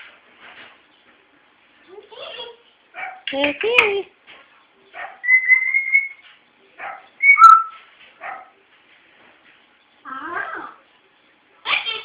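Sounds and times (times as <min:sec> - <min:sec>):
person whistling: 0:07.2 - 0:07.7.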